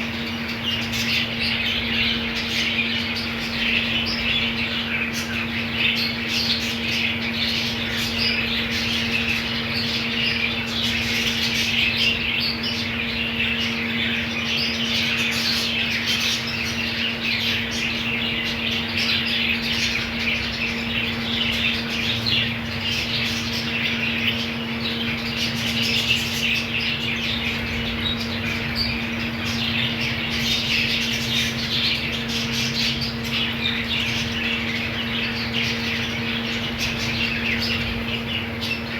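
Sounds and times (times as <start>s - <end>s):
budgerigars chattering and squawking: 0.0s - 38.9s
steady low hum: 0.0s - 38.9s.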